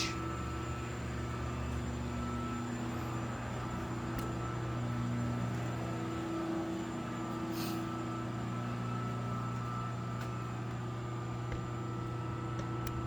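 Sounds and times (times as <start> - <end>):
electrical hum from machinery: 0.0 - 13.0.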